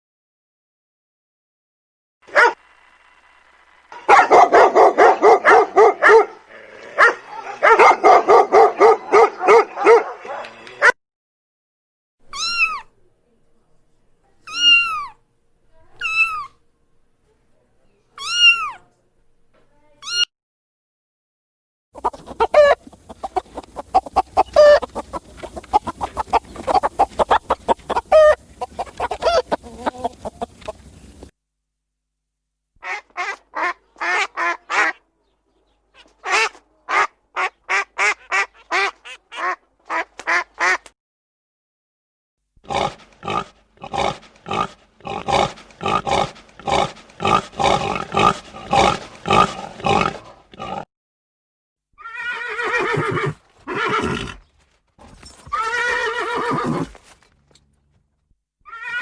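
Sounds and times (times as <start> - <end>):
dog barking: 2.3 - 2.6, 4.0 - 11.0
faint hum: 12.9 - 18.2
chickens clucking: 22.0 - 31.3.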